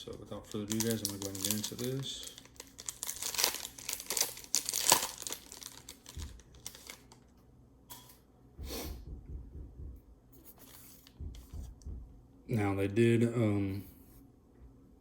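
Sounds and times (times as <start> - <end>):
cards rustling: 0.1 - 7.2
foil wrapper tearing and crinkling: 0.2 - 7.2.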